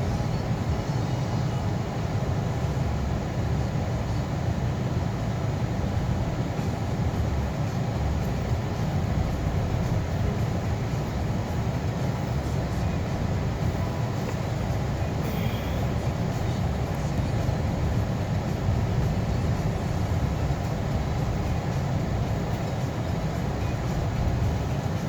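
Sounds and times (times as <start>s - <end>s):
car engine and tyre noise: 0.0s - 25.0s.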